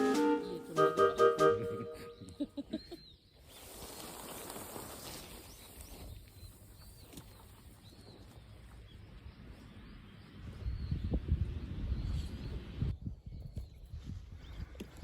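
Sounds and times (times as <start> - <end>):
low rumble of wind: 5.8 - 15.0.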